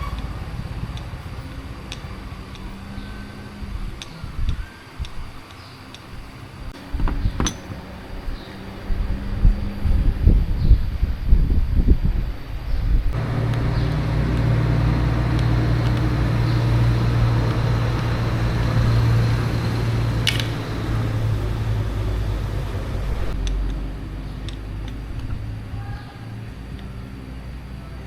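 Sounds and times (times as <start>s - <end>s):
motor humming: 0.0s - 27.8s
sharp click: 20.2s - 20.7s.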